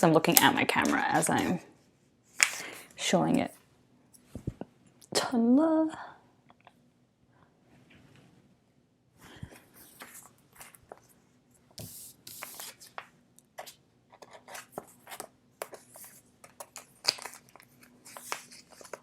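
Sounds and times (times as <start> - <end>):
plastic sleeves and cards rustling: 11.8 - 19.0.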